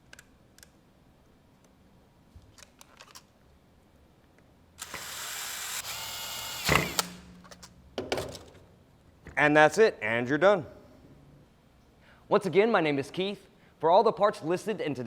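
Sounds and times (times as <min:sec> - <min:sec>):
power screwdriver running: 0:04.8 - 0:07.2.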